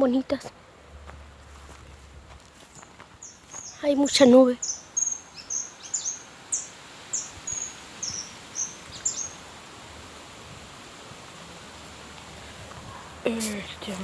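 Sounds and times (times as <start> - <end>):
outdoor background noise: 0.0 - 14.0
bird chirping: 2.7 - 9.5.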